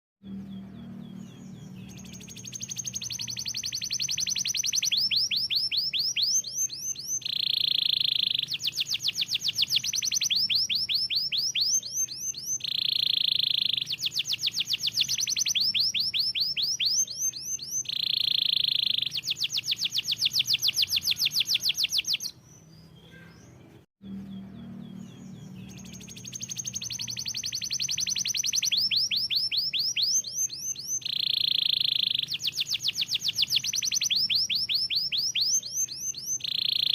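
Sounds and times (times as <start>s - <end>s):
canary singing: 0.2s - 36.9s.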